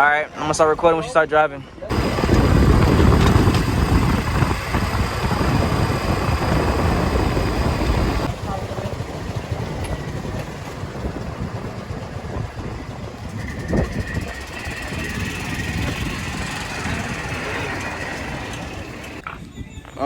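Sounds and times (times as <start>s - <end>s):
wind buffeting microphone: 1.8s - 20.0s
steady high whine: 1.9s - 10.4s
vehicle road rumble: 1.9s - 19.5s.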